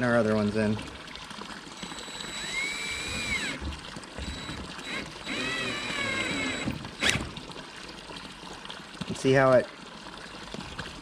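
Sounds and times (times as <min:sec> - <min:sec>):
cordless drill motor whining: 0:01.8 - 0:07.4.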